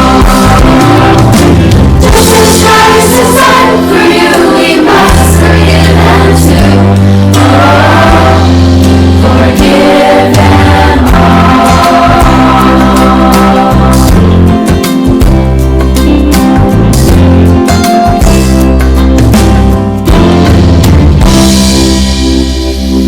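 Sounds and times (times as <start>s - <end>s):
group of voices singing: 0.0s - 15.0s
bass and guitar backing: 0.0s - 23.0s.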